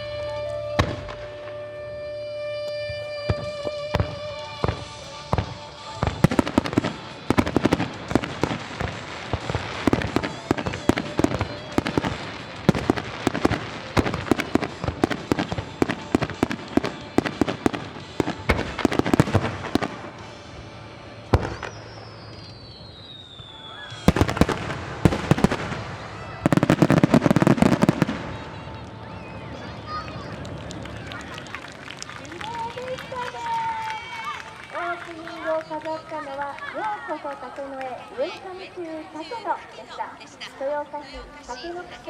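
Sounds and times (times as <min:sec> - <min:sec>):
show music: 0:00.0 - 0:35.4
firework shells bursting: 0:03.3 - 0:20.5
falling whistle: 0:21.6 - 0:24.3.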